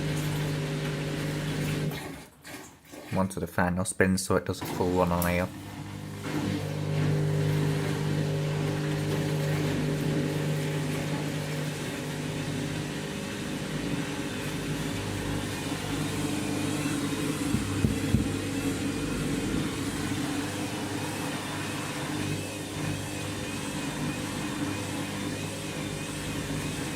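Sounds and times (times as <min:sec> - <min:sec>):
washing machine drum motor hum: 0:00.0 - 0:03.3, 0:04.6 - 0:26.9
washing machine drum knocks: 0:17.4 - 0:18.6.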